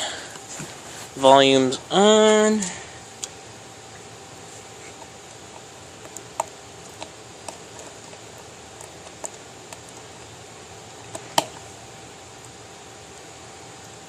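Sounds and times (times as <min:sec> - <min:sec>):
speaker hiss: 0:00.0 - 0:14.0
crackling clicks and pops: 0:04.9 - 0:10.3.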